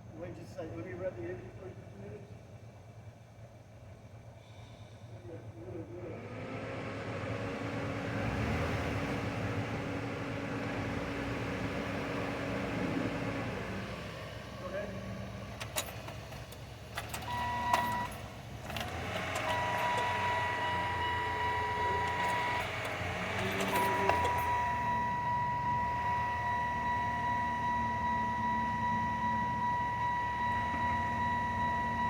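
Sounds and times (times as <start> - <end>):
car engine running: 5.7 - 27.7
high electronic warning tone: 17.0 - 32.0
clicks: 21.5 - 24.7.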